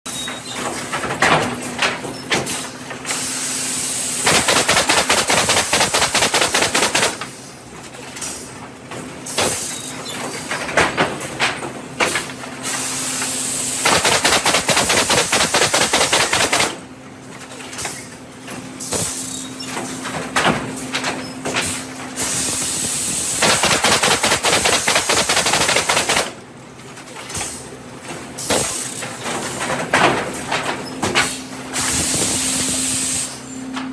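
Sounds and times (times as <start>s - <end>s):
pneumatic nail guns firing: 2.4s - 7.4s, 9.3s - 9.9s, 12.0s - 16.9s, 18.8s - 19.4s, 21.5s - 26.4s, 28.4s - 29.6s, 31.1s - 33.4s
loud hissing air: 22.2s - 26.1s, 31.7s - 33.6s.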